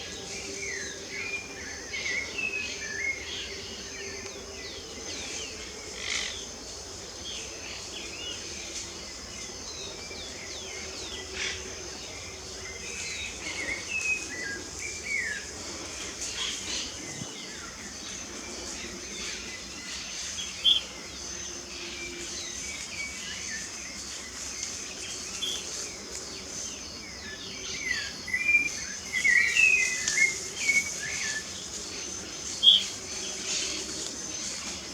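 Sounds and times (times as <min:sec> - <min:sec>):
birds chirping and singing: 0:18.8 - 0:23.8, 0:24.6 - 0:34.6.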